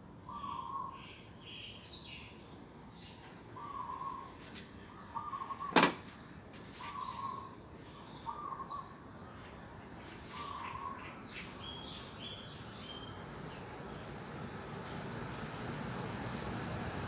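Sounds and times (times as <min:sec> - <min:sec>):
high thin bird chirps: 0:06.8 - 0:07.6.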